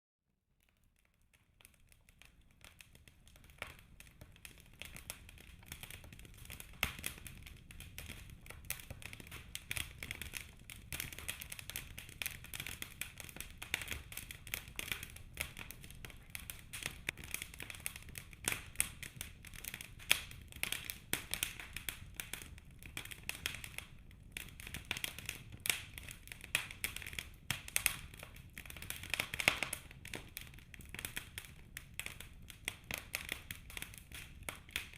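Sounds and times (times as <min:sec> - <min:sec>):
fire crackling and popping: 0:00.6 - 0:34.9
low rumble of flames: 0:02.3 - 0:34.9.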